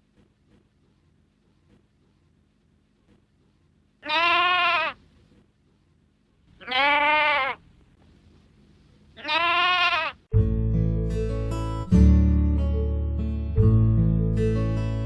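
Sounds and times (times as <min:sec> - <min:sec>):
lamb baaing: 0:04.0 - 0:05.0, 0:06.6 - 0:07.6, 0:09.2 - 0:10.2.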